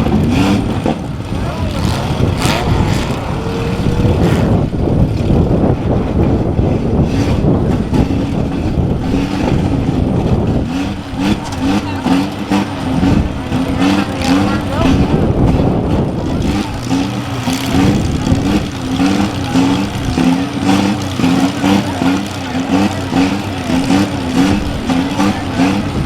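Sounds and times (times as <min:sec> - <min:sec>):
car engines revving: 0:00.0 - 0:26.0.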